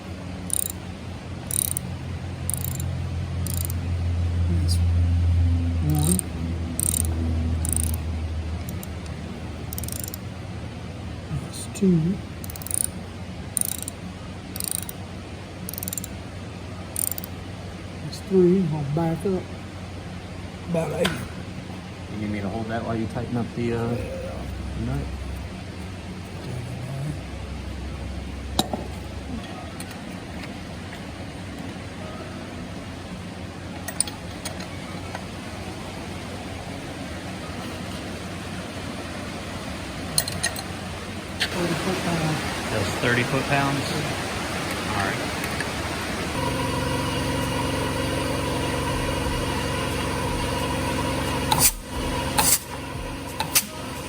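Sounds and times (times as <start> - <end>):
low background hum: 0.0 - 54.0
ratchet wrench clicking: 0.4 - 0.8, 1.4 - 3.8, 5.9 - 10.3, 12.4 - 13.0, 13.6 - 15.0, 15.7 - 16.2, 17.0 - 17.4.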